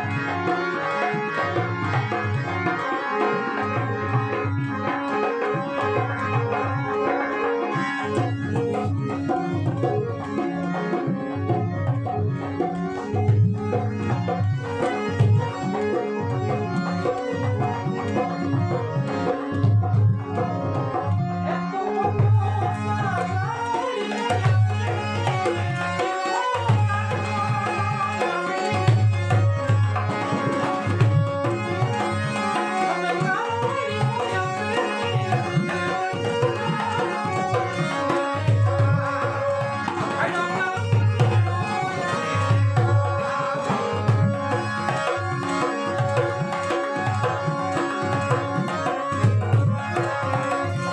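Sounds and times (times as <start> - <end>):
tabla drum strokes: 28.7 - 33.4.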